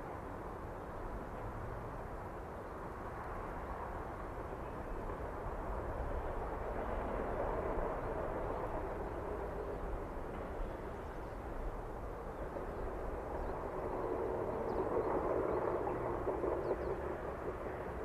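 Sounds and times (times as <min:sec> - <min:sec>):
distant train rumbling: 0:00.0 - 0:18.0.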